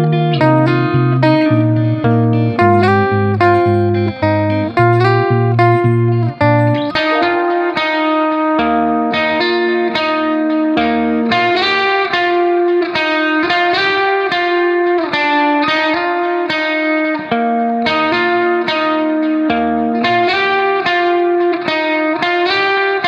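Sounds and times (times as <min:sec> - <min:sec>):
plucked guitar melody: 0:00.0 - 0:23.0
bass line: 0:00.4 - 0:07.5.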